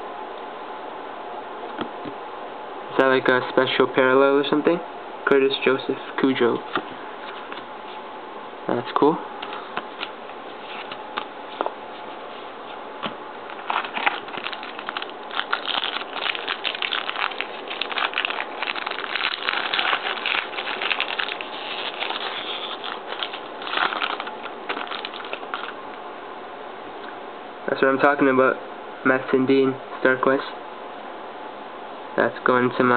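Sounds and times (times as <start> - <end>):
card wrappers rustling and crinkling: 9.4 - 25.8.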